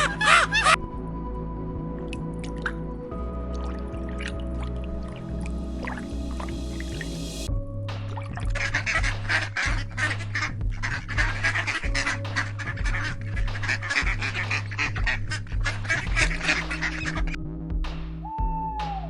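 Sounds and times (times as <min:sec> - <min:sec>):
birds quacking: 0:00.0 - 0:00.8, 0:08.6 - 0:17.4
background music: 0:00.0 - 0:19.0.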